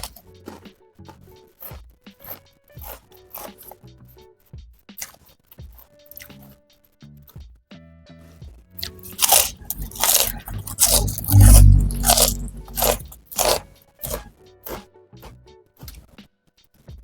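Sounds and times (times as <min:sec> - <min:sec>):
crunching crisp fried food: 0:00.0 - 0:01.2, 0:02.2 - 0:03.8, 0:05.0 - 0:05.2, 0:08.8 - 0:14.8.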